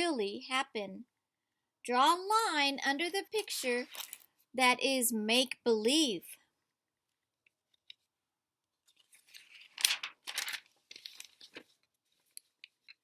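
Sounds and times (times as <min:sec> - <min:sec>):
paper rustling and crinkling: 0:03.6 - 0:04.3, 0:08.8 - 0:12.9.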